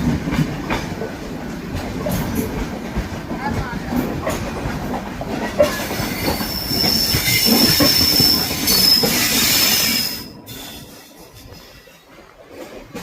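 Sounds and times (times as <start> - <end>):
train wheels rumbling on track: 0.0 - 13.0
high-pitched wheel squeal: 6.0 - 10.9.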